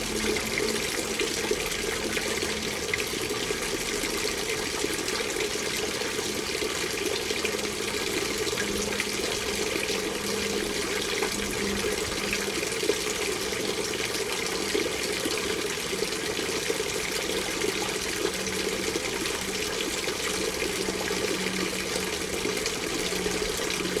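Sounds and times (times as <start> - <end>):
water splashing into fountain basin: 0.0 - 24.0.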